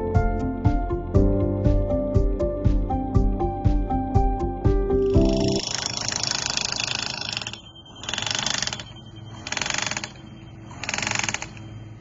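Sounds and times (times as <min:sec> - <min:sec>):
rapid mechanical clicking: 0:05.0 - 0:11.7.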